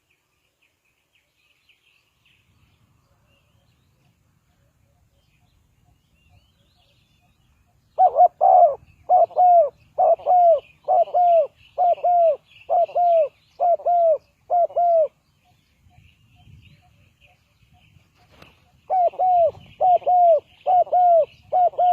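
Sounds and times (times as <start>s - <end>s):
dove cooing: 8.0s - 15.2s, 18.2s - 21.9s.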